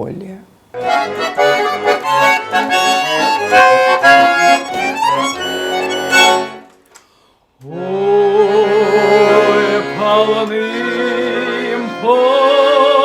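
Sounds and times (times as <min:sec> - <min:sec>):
button accordion playing: 0:00.8 - 0:06.8, 0:08.6 - 0:12.9.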